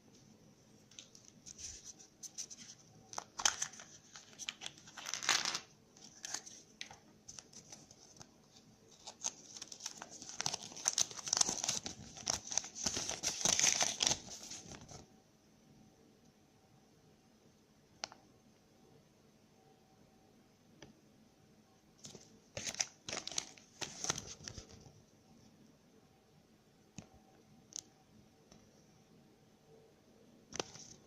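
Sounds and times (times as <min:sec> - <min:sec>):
foil wrapping tearing and crinkling: 0:08.9 - 0:14.6.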